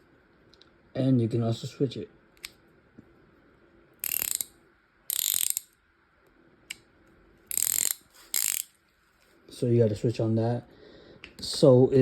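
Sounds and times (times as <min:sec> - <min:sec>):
ratchet wrench clicking: 0:04.0 - 0:04.5, 0:05.1 - 0:05.8, 0:07.5 - 0:08.7.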